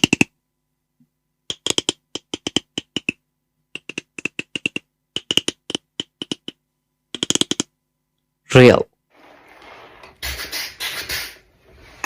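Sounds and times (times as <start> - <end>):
beatboxer mouth clicks: 3.8 - 6.6, 10.2 - 11.4.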